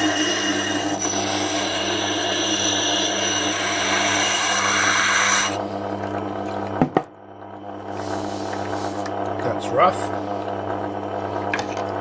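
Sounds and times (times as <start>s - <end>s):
grinding stone gritty rasp: 0.0s - 5.6s
machine low hum: 5.5s - 12.0s.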